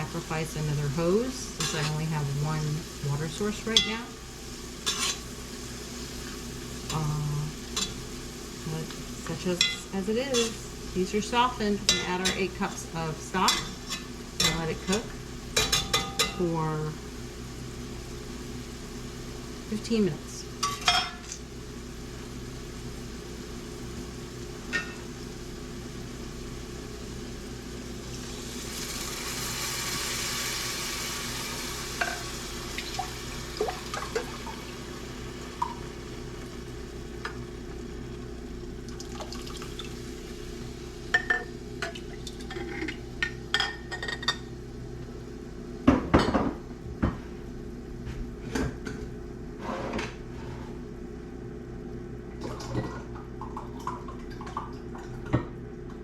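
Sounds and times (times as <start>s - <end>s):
steady low hum: 0.0s - 56.0s
liquid pouring hiss: 38.8s - 40.9s.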